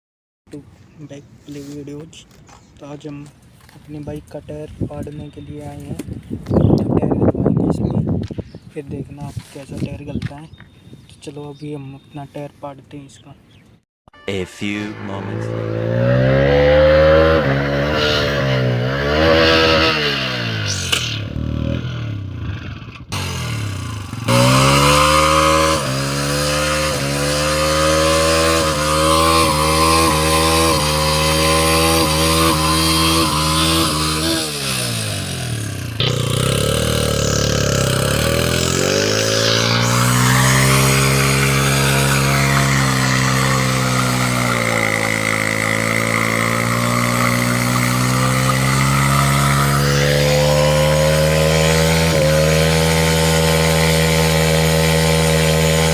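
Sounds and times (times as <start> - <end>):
motorcycle engine revving: 14.9 - 55.9.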